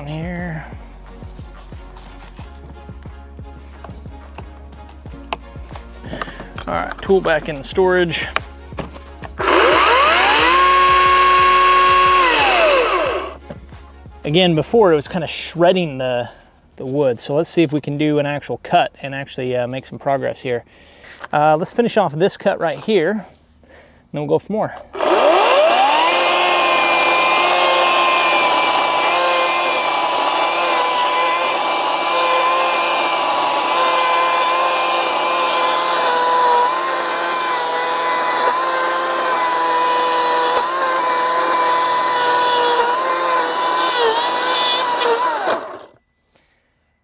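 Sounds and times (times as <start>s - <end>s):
chainsaw cutting stump: 8.3s - 13.4s, 24.9s - 46.0s.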